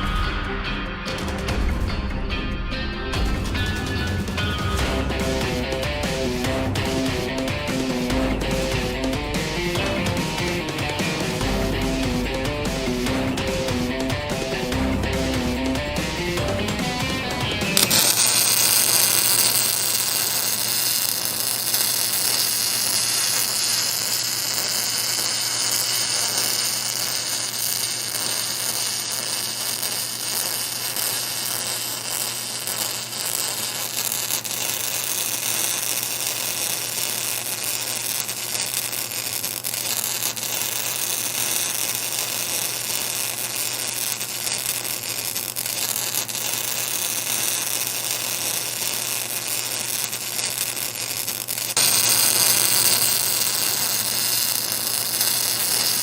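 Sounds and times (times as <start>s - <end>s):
welding arc hissing and buzzing: 3.2s - 56.0s.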